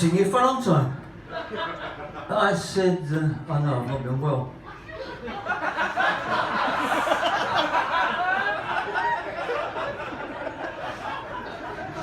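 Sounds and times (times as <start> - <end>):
audience laughing: 1.2 - 2.3, 4.6 - 12.0.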